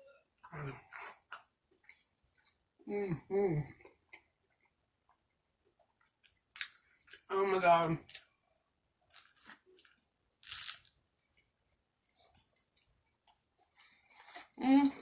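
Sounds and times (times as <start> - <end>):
person chewing crunchy food: 9.1 - 11.0.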